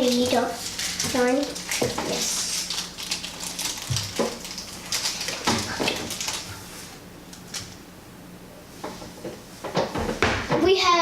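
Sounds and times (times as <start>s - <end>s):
packaging crinkling: 0.0s - 6.7s.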